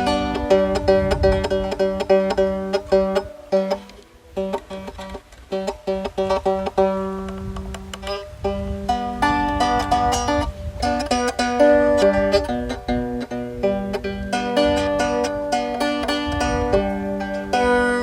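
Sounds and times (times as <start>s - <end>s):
fiddle strings plucked: 0.0s - 18.0s.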